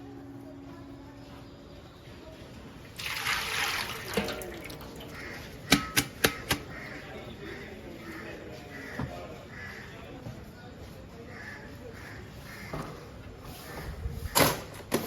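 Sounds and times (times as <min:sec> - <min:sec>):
sharp knocks: 0:05.7 - 0:06.7.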